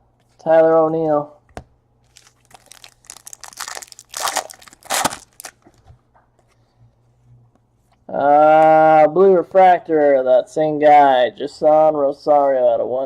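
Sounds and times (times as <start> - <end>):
card pack wrapper crinkling: 2.0 - 5.8.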